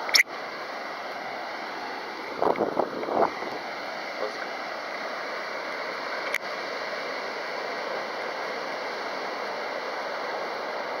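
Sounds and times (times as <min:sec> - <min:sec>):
strong wind hissing: 0:02.2 - 0:04.2
sharp click: 0:06.2 - 0:06.4.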